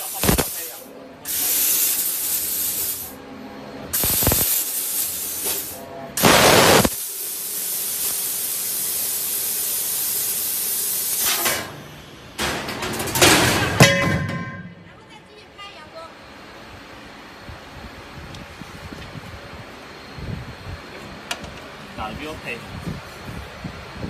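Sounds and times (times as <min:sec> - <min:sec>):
gas hissing through laser cutter: 0:00.0 - 0:03.2, 0:03.8 - 0:12.3.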